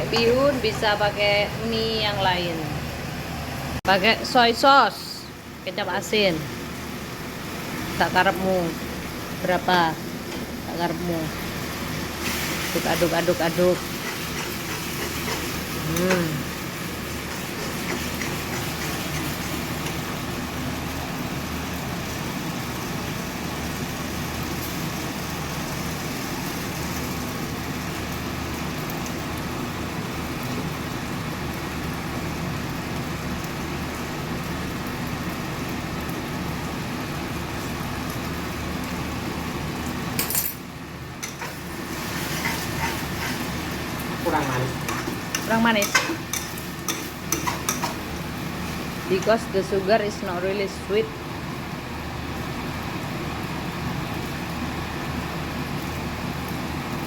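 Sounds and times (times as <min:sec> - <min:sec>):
noodles cooking in a pan: 0:00.0 - 0:57.0
stirring in a pan: 0:10.0 - 0:20.9, 0:41.0 - 0:49.7.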